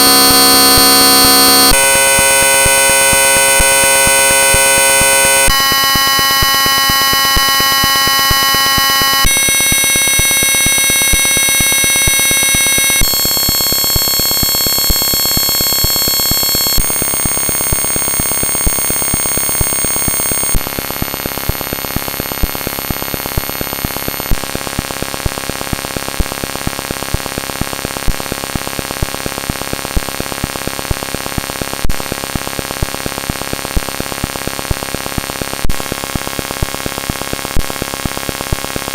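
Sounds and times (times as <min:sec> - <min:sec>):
harsh buzzing alarm chord: 0:00.0 - 0:20.8.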